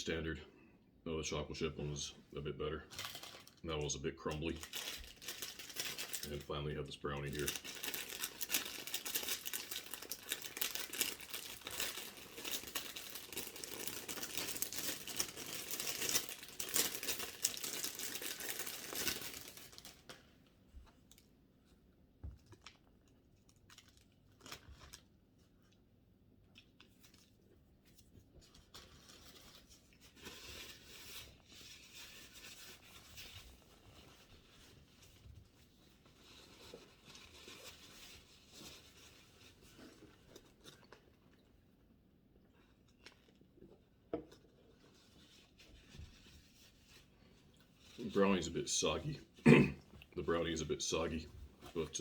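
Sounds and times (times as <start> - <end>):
plastic wrapper tearing and crinkling: 2.9 - 20.2, 22.5 - 25.2, 28.4 - 41.2.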